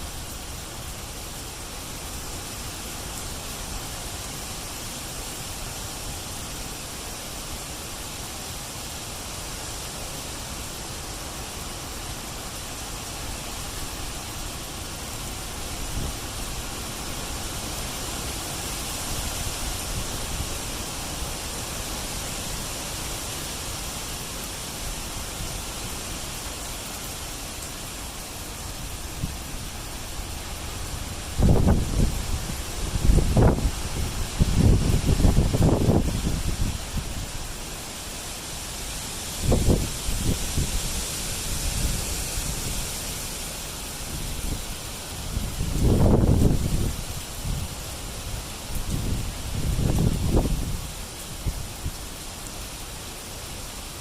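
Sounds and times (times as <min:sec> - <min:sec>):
wind gusting: 0:30.4 - 0:37.5, 0:39.1 - 0:47.7
wind rumble on microphone: 0:30.5 - 0:37.4, 0:39.3 - 0:43.0, 0:44.0 - 0:52.0.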